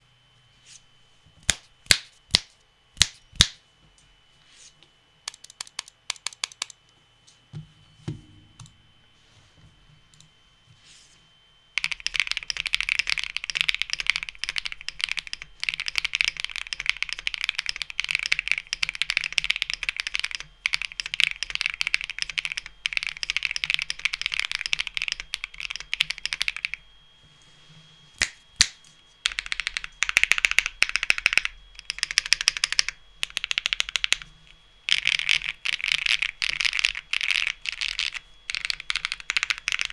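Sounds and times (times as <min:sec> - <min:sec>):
mechanical keyboard typing: 0:05.3 - 0:06.8, 0:11.8 - 0:26.8, 0:28.2 - 0:34.3, 0:34.9 - 0:39.9.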